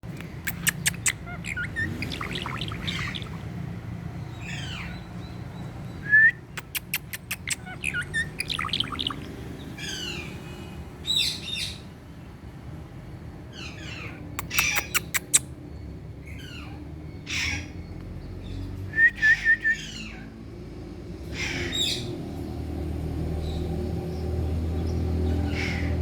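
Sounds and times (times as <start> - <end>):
parrot chirping and squawking: 0.1 - 5.1, 6.5 - 10.4, 13.5 - 15.5, 16.2 - 17.8, 21.3 - 22.2, 25.2 - 26.0
sharp clicks: 0.2 - 1.2, 6.6 - 7.6, 14.4 - 15.4.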